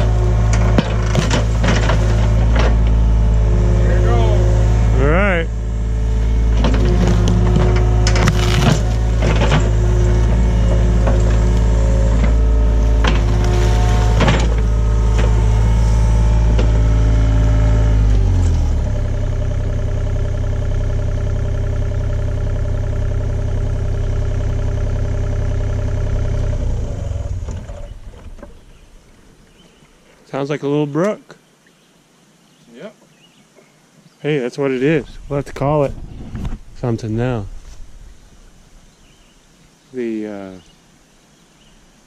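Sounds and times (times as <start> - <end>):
knocks and rattles: 0.0 - 3.1, 6.4 - 15.8
excavator diesel engine running: 0.0 - 29.8.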